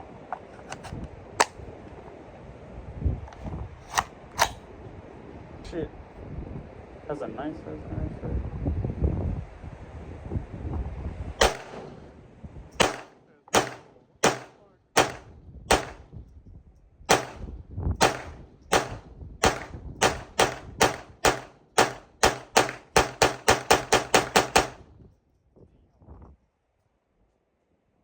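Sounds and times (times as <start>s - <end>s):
gunshots: 11.4s - 12.1s, 12.8s - 16.1s, 17.1s - 24.8s.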